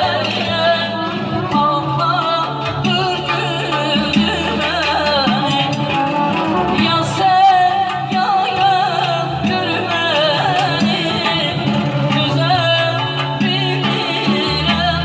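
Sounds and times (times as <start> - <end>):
repeated bass notes: 10.7 - 15.0.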